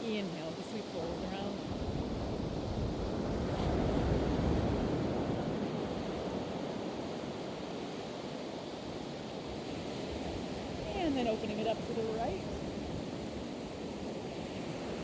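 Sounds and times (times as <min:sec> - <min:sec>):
wind on microphone: 0:00.0 - 0:07.9
surf washing on beach: 0:00.0 - 0:15.0.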